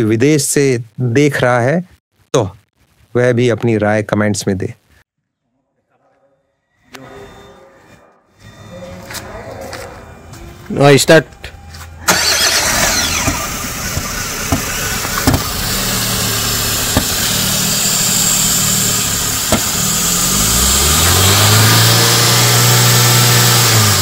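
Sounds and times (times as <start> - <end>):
car engine idling and revving: 11.6 - 24.0.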